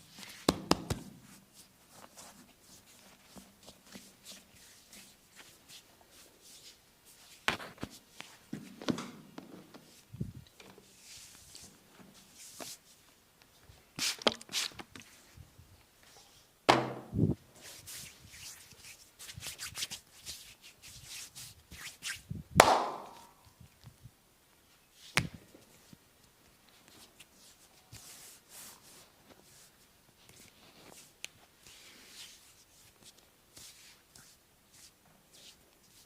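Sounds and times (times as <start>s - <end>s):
hand slaps on skin: 0.5s - 1.1s, 22.6s - 23.3s
hands rubbing skin: 17.6s - 22.2s, 26.8s - 36.0s.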